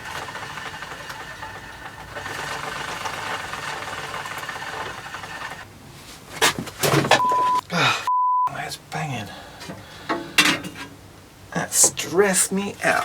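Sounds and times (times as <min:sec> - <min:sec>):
bicycle chain rattling: 0:00.0 - 0:05.6.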